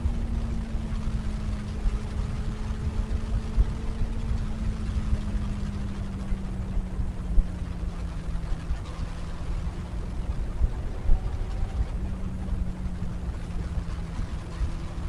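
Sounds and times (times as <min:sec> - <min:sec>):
motorcycle engine: 0:00.0 - 0:15.0
wind buffeting microphone: 0:00.0 - 0:15.0.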